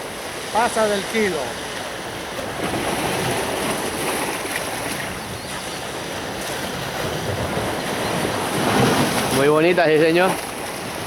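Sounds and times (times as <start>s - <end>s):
waves washing onto beach: 0.0s - 11.0s
wind on microphone: 2.4s - 11.0s.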